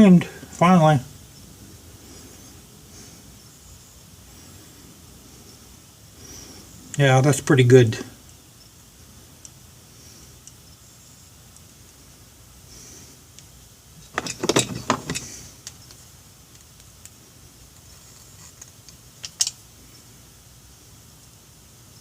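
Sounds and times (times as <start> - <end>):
metal parts clattering: 14.0 - 15.4, 19.2 - 19.6.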